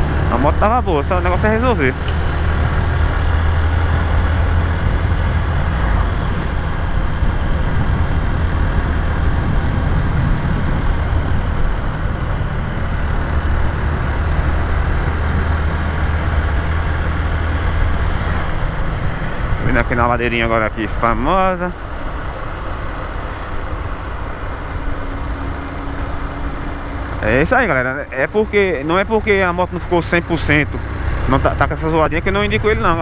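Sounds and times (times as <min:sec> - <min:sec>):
motorcycle engine running: 0:00.0 - 0:33.0.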